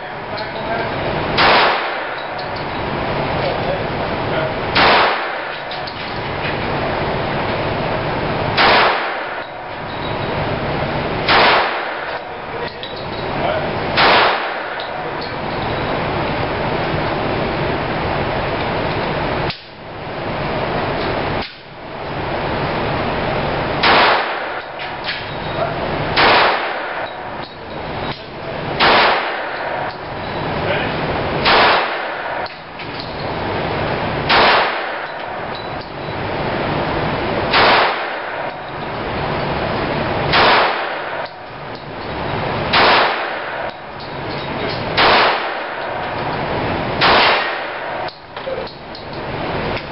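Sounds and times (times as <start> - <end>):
pistol shots echoing: 1.3 - 2.6, 4.7 - 5.8, 8.6 - 9.7, 11.2 - 12.4, 14.0 - 15.3, 23.8 - 25.0, 26.2 - 27.4, 28.8 - 30.0, 31.4 - 32.6, 34.3 - 35.8, 37.5 - 38.7, 40.3 - 41.4, 42.7 - 48.2.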